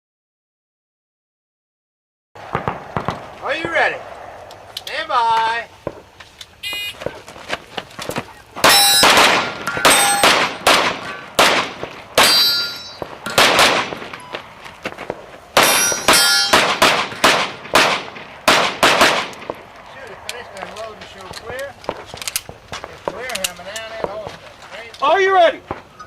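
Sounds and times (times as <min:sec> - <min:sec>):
pistol shots: 0:02.4 - 0:03.9, 0:08.6 - 0:19.8
steel targets clanging: 0:08.6 - 0:14.5, 0:15.6 - 0:17.3.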